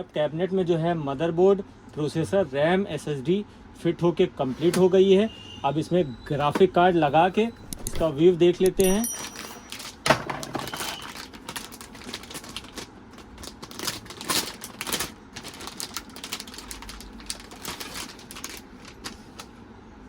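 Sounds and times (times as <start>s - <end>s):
packaging rustling: 7.3s - 19.6s.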